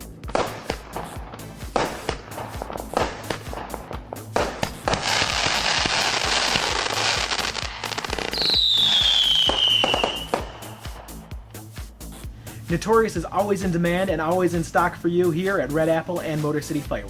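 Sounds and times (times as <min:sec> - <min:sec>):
background music with steady beat: 0:00.0 - 0:17.0
firework hissing crackle: 0:00.2 - 0:12.5.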